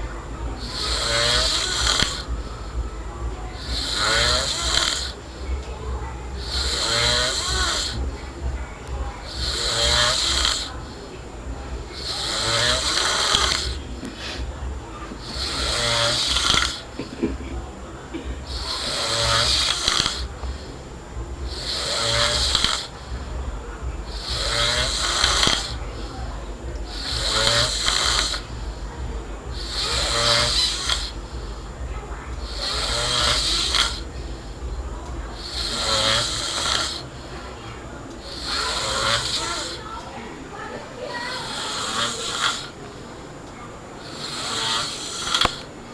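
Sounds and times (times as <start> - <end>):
person snoring: 0.0 - 2.8, 3.6 - 5.6, 6.3 - 8.0, 9.2 - 11.0, 11.9 - 14.5, 15.2 - 16.9, 18.4 - 20.7, 21.4 - 23.2, 24.1 - 25.8, 26.9 - 28.5, 29.5 - 31.2, 32.4 - 34.1, 35.4 - 37.0, 38.2 - 39.8, 41.2 - 42.8, 44.0 - 45.7.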